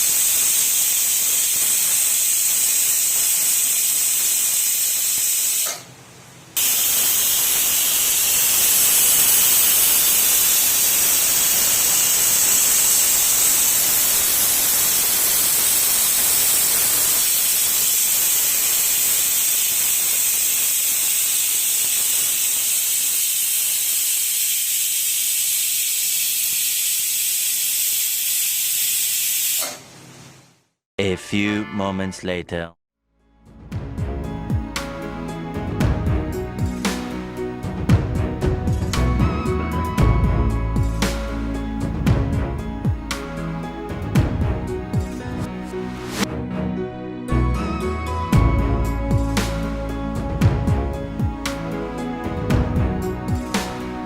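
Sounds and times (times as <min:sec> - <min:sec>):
pressure cooker whistle hissing: 0:00.0 - 0:05.9, 0:06.6 - 0:29.8.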